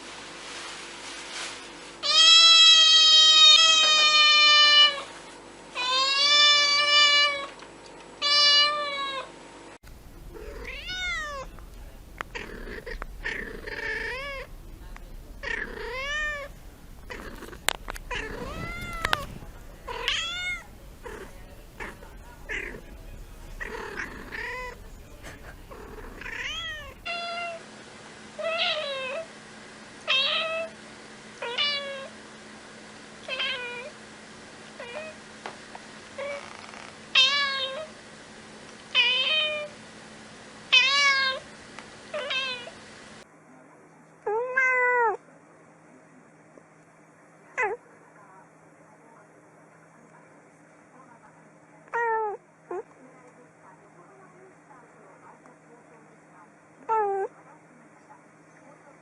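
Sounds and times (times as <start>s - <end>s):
cats meowing: 9.9s - 27.4s.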